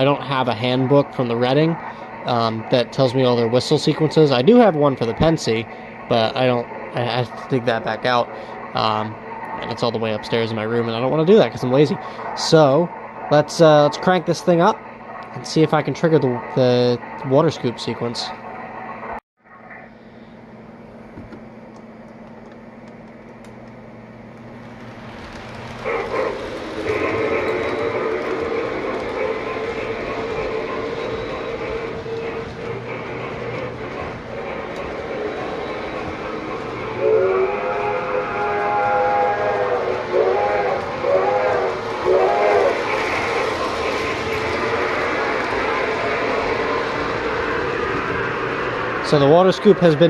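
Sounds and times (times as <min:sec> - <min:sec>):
model locomotive hum with chuffs: 0:00.0 - 0:50.0
steam whistle blowing: 0:34.9 - 0:45.5.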